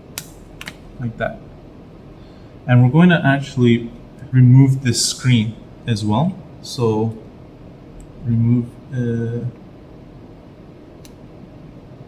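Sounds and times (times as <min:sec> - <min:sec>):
low room hum: 0:00.0 - 0:12.0
light click: 0:11.0 - 0:11.2.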